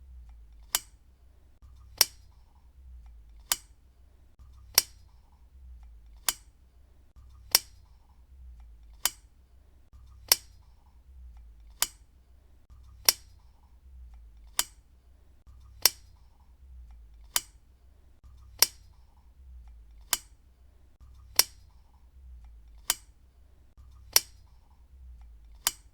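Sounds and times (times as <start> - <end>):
lamp switch clicking: 0.3 - 1.0, 1.9 - 3.8, 4.7 - 5.2, 5.8 - 6.6, 7.4 - 9.3, 10.1 - 12.1, 12.9 - 14.8, 15.7 - 17.6, 18.5 - 20.4, 21.2 - 23.2, 24.0 - 25.9.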